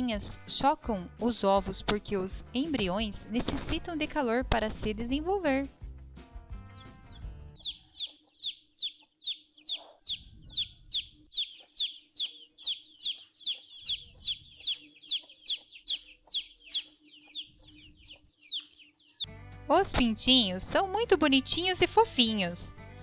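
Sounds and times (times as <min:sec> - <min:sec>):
chicks peeping: 0:06.8 - 0:19.3.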